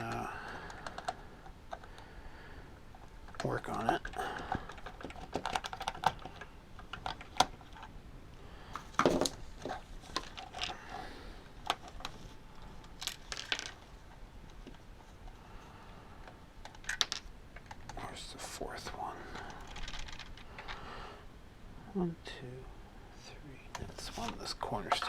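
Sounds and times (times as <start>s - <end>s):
small parts clattering on workbench: 8.8s - 10.8s, 13.0s - 13.8s, 16.6s - 17.3s.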